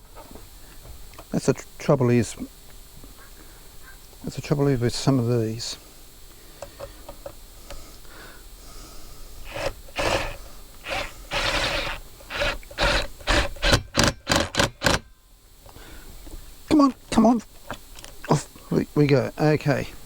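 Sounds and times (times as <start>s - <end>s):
hand tool scraping strokes: 9.4s - 15.0s.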